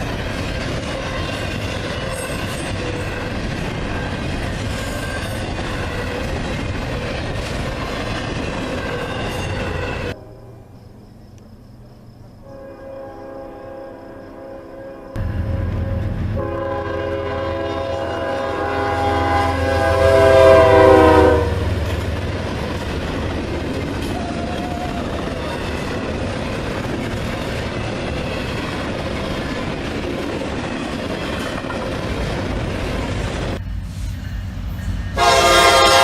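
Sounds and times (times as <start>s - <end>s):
train wheels rumbling on rails: 0.0s - 10.2s, 15.2s - 36.0s
locomotive horn: 12.4s - 22.0s, 35.2s - 36.0s.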